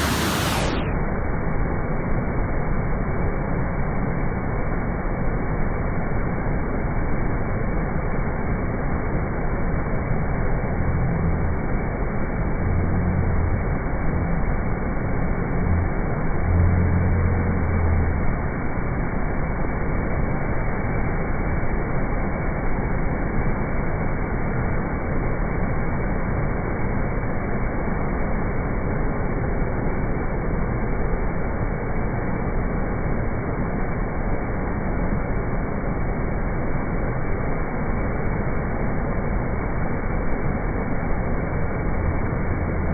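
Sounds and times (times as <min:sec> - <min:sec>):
floodwater rushing: 0:00.0 - 0:00.8
low hum: 0:00.0 - 0:42.9.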